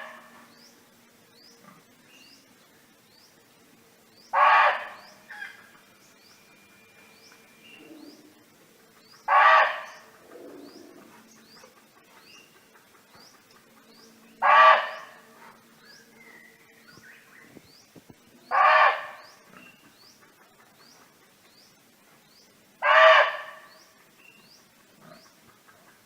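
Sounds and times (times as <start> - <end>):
deer barking: 4.3 - 5.5, 9.3 - 10.0, 14.4 - 15.1, 18.5 - 19.2, 22.8 - 23.6.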